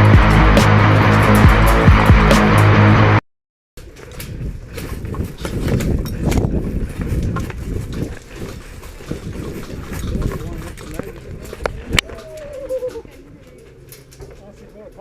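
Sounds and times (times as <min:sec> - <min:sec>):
gear rustling: 0:03.8 - 0:15.0
muffled thumping footsteps: 0:04.2 - 0:12.2.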